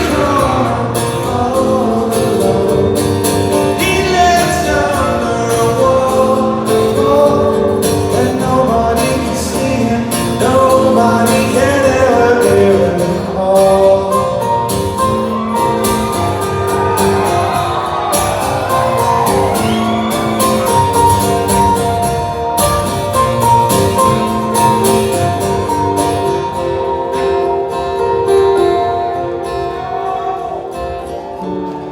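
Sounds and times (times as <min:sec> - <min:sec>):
man singing: 0:00.0 - 0:15.8
strummed acoustic guitar: 0:00.0 - 0:31.9
band accompaniment: 0:14.4 - 0:30.2.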